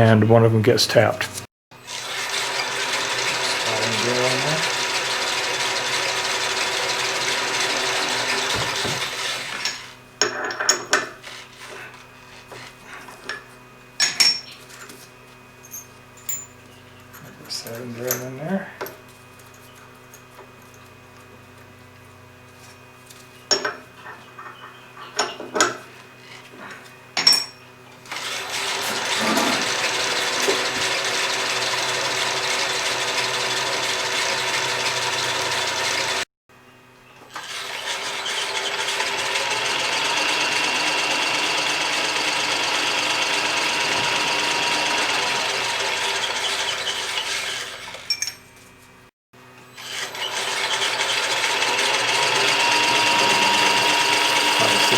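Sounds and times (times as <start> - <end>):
drill grinding through metal: 1.8 - 10.0, 28.1 - 36.3, 37.3 - 48.2, 49.7 - 54.9
machine spindle humming: 1.8 - 10.0, 28.0 - 36.2, 37.3 - 48.1, 49.6 - 54.9
metal clinks: 15.6 - 16.6.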